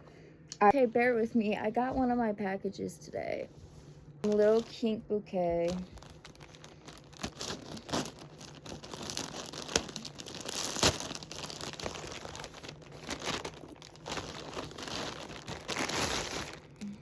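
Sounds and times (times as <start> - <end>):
packaging crinkling and tearing: 4.2 - 5.0, 5.6 - 17.0.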